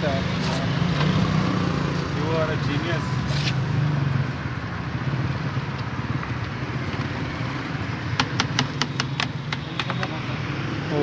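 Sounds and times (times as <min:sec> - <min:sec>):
sharp clicks: 0:08.2 - 0:10.3.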